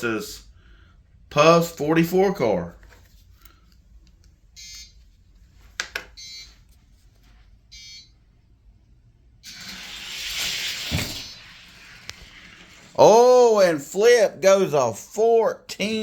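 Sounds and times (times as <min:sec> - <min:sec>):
electronic start beeps: 0:06.2 - 0:06.5, 0:07.7 - 0:08.1.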